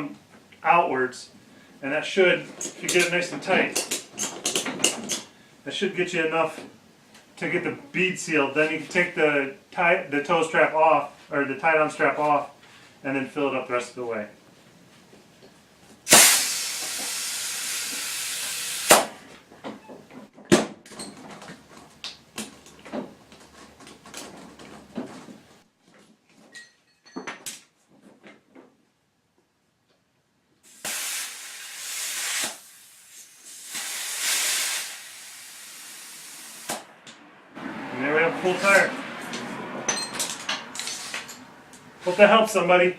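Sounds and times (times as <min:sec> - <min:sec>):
compressed air hissing into tire: 0:16.1 - 0:19.1, 0:30.7 - 0:36.9.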